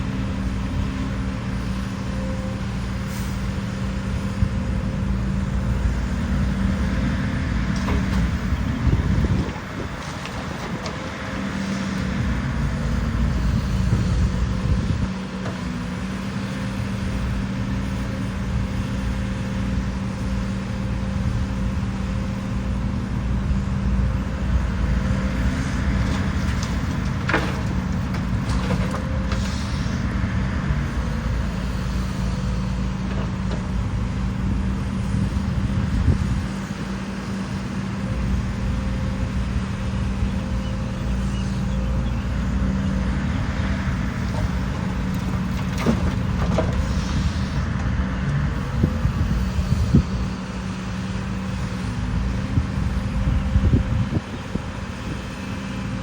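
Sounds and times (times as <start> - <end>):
diesel engine running under load: 0.0 - 56.0.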